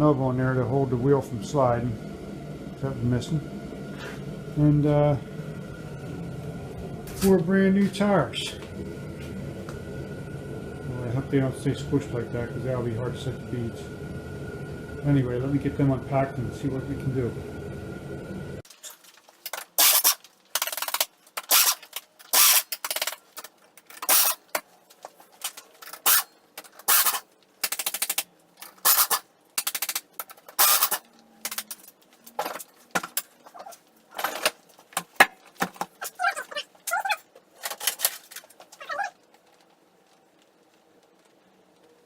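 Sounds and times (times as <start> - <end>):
squeaky stretching plastic: 28.7 - 29.3, 33.4 - 34.4, 35.9 - 37.4, 38.5 - 39.6.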